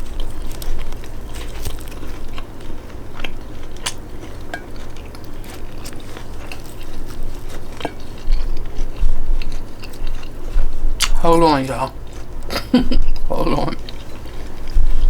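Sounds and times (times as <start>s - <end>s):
lettuce crunching while chewing: 0.0s - 15.0s
wet mouth clicks: 11.0s - 11.2s.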